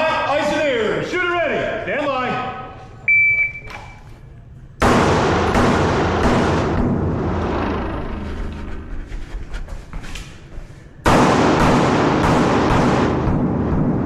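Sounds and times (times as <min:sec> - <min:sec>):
shot timer beep: 0:03.1 - 0:04.1
rapid pistol shots with echo: 0:04.8 - 0:07.4, 0:11.0 - 0:14.0.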